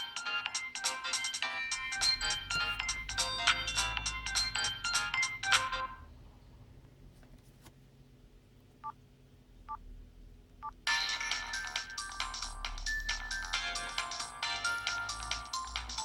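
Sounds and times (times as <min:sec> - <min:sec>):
phone ringtone melody: 0:00.0 - 0:06.0, 0:10.9 - 0:16.0.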